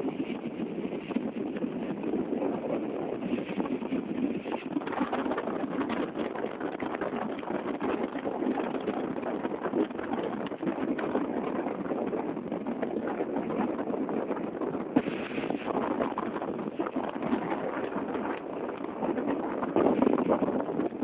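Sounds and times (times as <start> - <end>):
storm wind blowing hard: 0.0 - 21.0.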